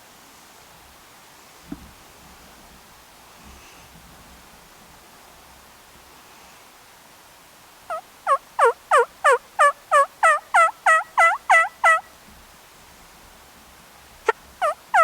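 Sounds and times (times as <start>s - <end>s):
hen turkey yelps: 7.9s - 12.1s, 14.6s - 15.0s.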